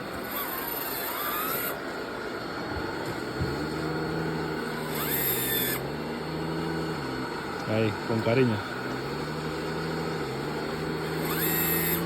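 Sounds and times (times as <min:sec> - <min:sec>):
model excavator motors whirring: 0:00.0 - 0:12.0
rising whine: 0:00.0 - 0:12.0
steady low hum: 0:00.0 - 0:12.0.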